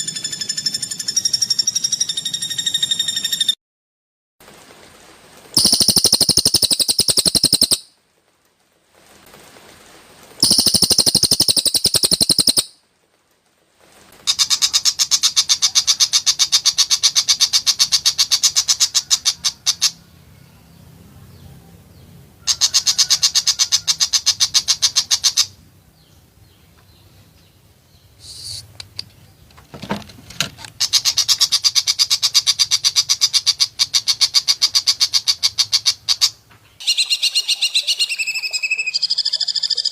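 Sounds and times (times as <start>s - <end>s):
bird's rapid harsh call bursts: 5.6s - 7.9s, 10.4s - 12.8s, 14.2s - 20.0s, 22.5s - 25.6s, 28.2s - 28.8s, 30.8s - 39.9s
separate bird calls: 5.6s - 7.9s, 10.4s - 12.8s, 14.3s - 20.7s, 22.4s - 25.6s, 28.0s - 39.9s.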